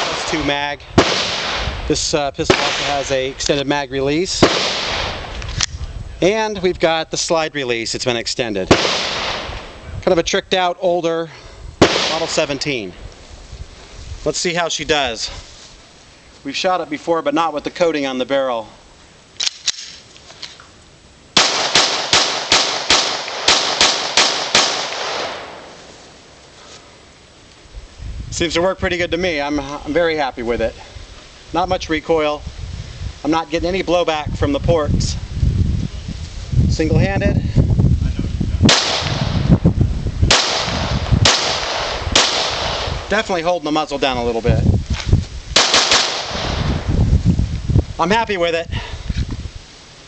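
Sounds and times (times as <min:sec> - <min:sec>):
pistol shots with echo: 0:01.0 - 0:01.8, 0:02.5 - 0:03.0, 0:04.4 - 0:05.2, 0:08.7 - 0:09.5, 0:11.8 - 0:12.5, 0:21.4 - 0:25.7, 0:38.7 - 0:39.4, 0:40.3 - 0:43.1, 0:45.6 - 0:46.6.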